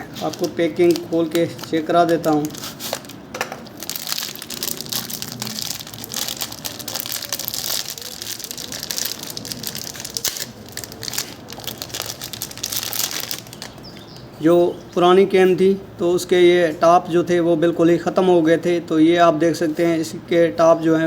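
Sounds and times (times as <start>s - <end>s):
packaging crinkling: 0.0s - 14.3s.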